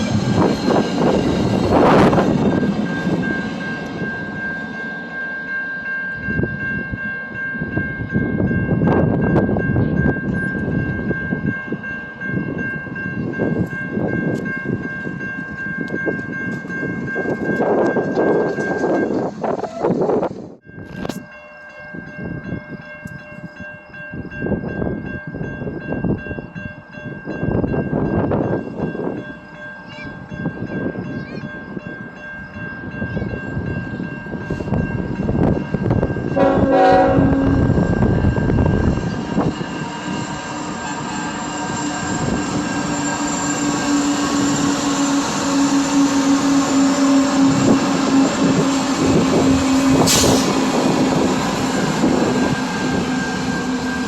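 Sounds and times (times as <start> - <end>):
train wheels rumbling and clacking: 0.0 - 5.0, 6.1 - 21.2, 27.2 - 54.0
train horn: 36.4 - 37.9, 43.6 - 50.6.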